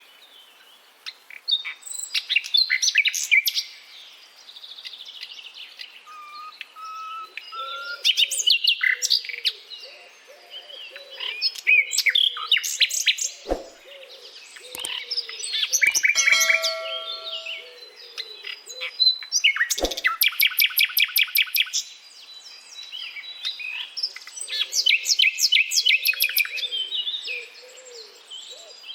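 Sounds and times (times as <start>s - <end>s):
nightingale singing: 12.9s - 18.2s.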